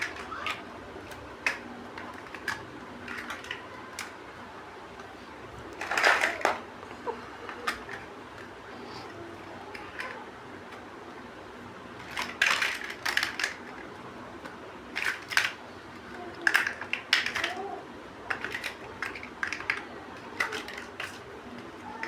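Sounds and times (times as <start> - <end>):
plastic bricks clicking together: 0.0 - 4.2, 5.7 - 6.6, 12.0 - 13.9, 14.9 - 21.7.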